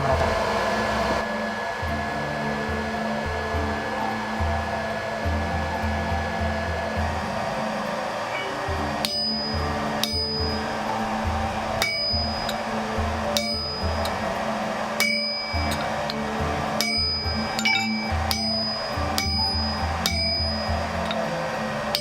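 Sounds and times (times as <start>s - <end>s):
background music: 0.0s - 22.0s
hammer clanging on anvil: 8.4s - 10.6s, 11.8s - 12.6s, 13.4s - 14.2s, 15.0s - 16.2s, 16.8s - 21.2s.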